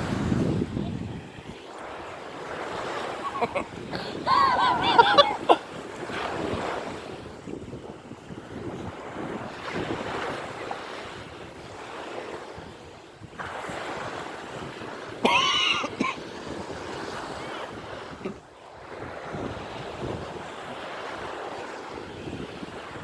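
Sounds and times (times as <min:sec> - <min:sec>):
surf: 0:00.0 - 0:23.0
wind buffeting microphone: 0:00.0 - 0:23.0
loud pitched wail: 0:04.2 - 0:05.6.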